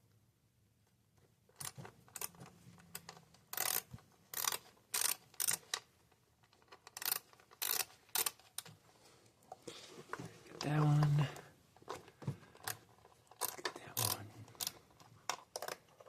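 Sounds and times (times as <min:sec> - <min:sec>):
socket ratchet clicking: 0:01.6 - 0:05.9, 0:06.6 - 0:08.7, 0:12.6 - 0:15.9.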